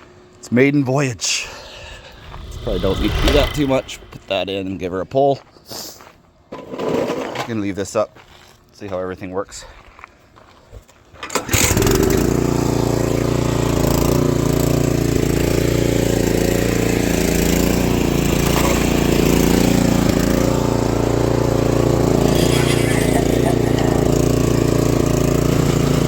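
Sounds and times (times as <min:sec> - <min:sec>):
snowblower engine pull-started and running: 0:11.2 - 0:26.0.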